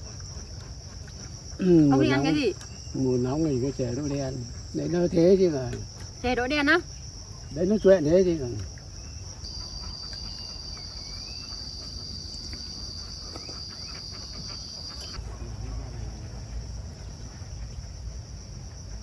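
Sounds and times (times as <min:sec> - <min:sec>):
insects trilling: 0:00.0 - 0:19.0
faint chirps: 0:07.2 - 0:18.0.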